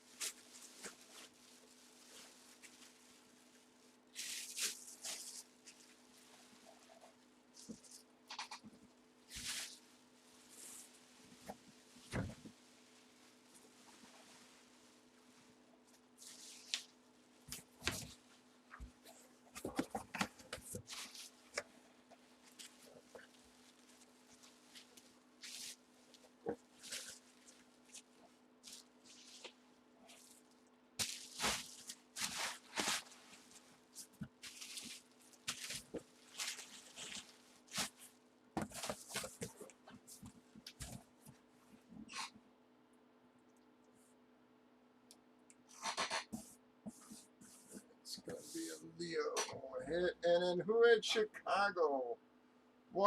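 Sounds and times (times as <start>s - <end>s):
hands rustling packaging: 0.0s - 41.2s
faint steady hum: 0.0s - 53.0s.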